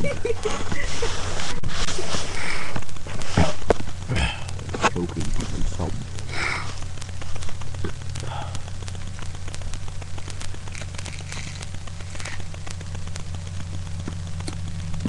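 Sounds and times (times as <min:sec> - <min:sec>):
fine crackling clicks: 0:00.0 - 0:15.0
low electrical hum: 0:00.0 - 0:15.0
breathy mouth sounds: 0:01.9 - 0:05.0, 0:05.8 - 0:09.6.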